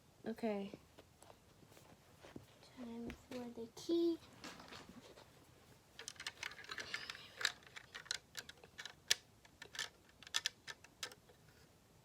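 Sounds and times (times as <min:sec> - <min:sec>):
plastic pieces clicking together: 0:06.0 - 0:11.4.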